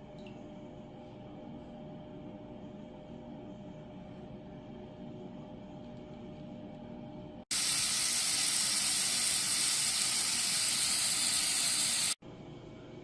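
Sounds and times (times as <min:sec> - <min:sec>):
low room hum: 0:00.0 - 0:13.0
loud even hiss: 0:07.5 - 0:12.2.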